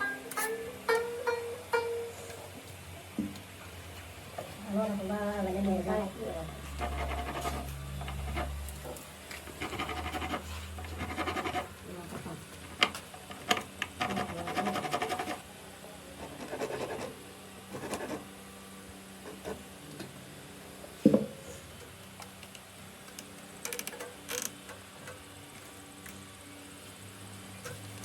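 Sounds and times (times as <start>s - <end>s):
scraping and rubbing on wood: 6.7s - 11.8s, 12.8s - 15.4s, 16.2s - 18.3s.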